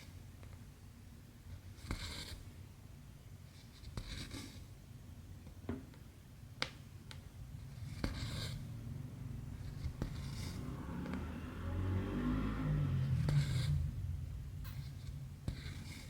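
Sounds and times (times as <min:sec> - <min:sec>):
steady low hum: 0:07.3 - 0:11.8, 0:12.4 - 0:16.0.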